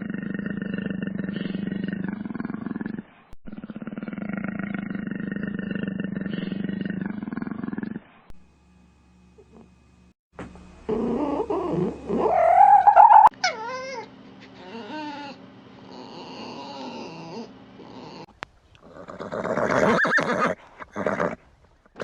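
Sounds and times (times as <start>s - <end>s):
cat caterwauling: 11.0s - 18.3s.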